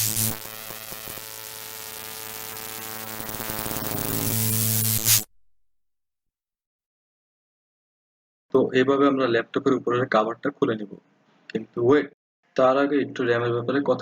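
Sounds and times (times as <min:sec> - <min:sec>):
buzzing electronic hum with static: 0:00.0 - 0:05.3.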